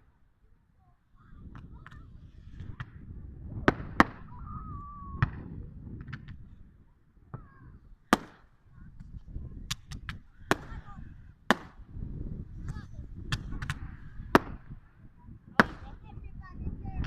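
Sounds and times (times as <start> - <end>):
distant fireworks bangs: 1.5 - 4.4, 9.8 - 11.9, 12.6 - 16.1.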